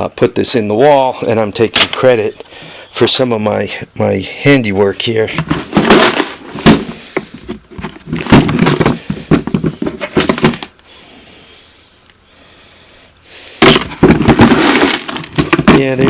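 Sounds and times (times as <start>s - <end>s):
metal tools clinking: 1.7s - 2.1s, 13.8s - 16.0s.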